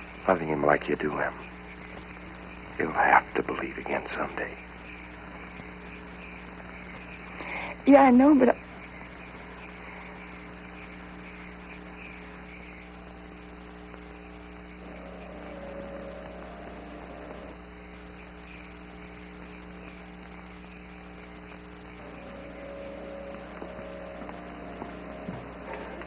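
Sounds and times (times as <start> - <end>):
electrical mains hum: 0.0 - 26.0
faint held tone: 14.8 - 17.7, 22.0 - 26.0.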